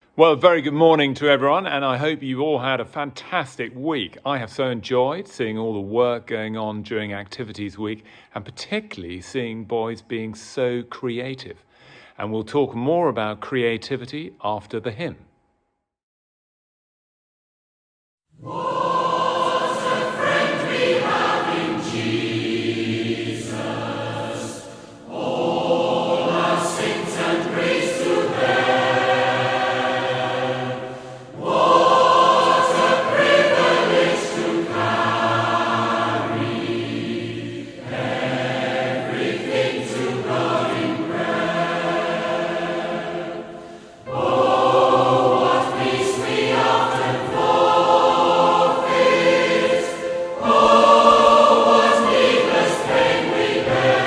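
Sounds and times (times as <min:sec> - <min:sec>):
choir singing a hymn: 0:18.4 - 0:54.0.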